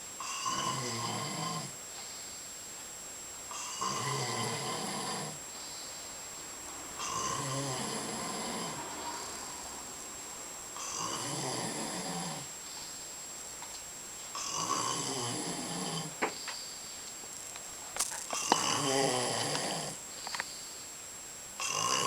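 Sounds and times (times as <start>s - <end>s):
person snoring heavily: 0.2s - 1.8s, 3.5s - 5.4s, 7.0s - 9.6s, 10.8s - 12.6s, 14.3s - 16.2s, 18.3s - 20.0s, 21.6s - 22.0s
quiet breathing: 1.6s - 2.8s, 4.5s - 9.9s, 10.7s - 13.7s, 14.3s - 17.4s, 18.1s - 21.1s.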